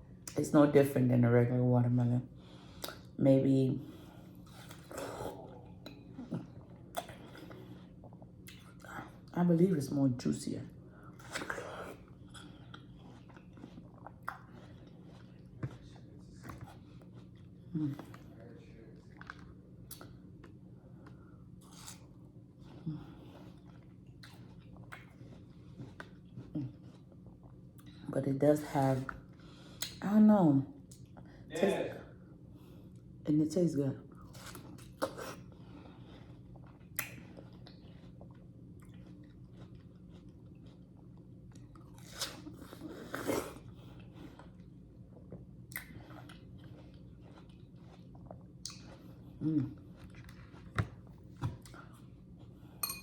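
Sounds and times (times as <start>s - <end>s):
steady low hum: 0.0s - 53.0s
wet chewing of watermelon: 3.9s - 10.3s, 10.9s - 28.0s, 34.1s - 52.8s.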